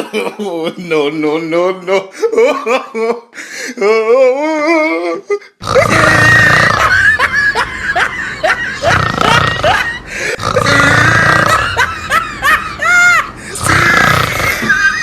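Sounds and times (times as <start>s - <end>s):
comic snoring with whistles: 5.6s - 6.9s, 8.8s - 11.7s, 13.6s - 14.7s.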